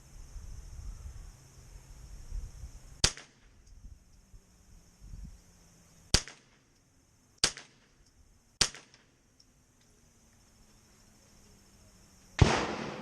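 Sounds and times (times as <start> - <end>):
rifle shots with echo: 12.4 - 13.0.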